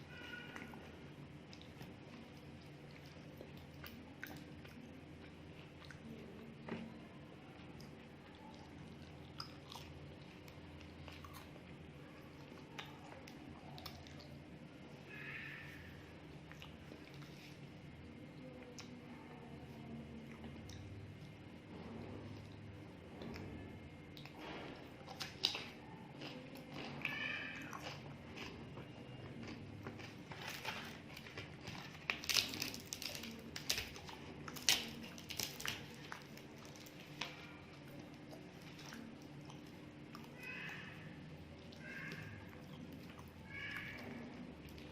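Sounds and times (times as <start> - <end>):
steady low hum: 0.0 - 44.9
mouth chewing with smacks: 1.5 - 6.1, 16.4 - 17.7, 24.2 - 40.3, 41.6 - 44.9
crisp crunches: 29.3 - 39.1.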